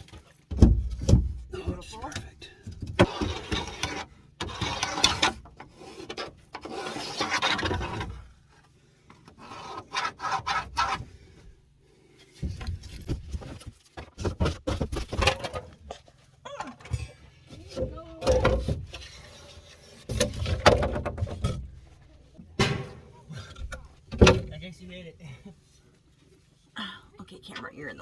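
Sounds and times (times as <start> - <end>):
flooring boards scraping: 3.0 - 8.2, 9.4 - 11.3.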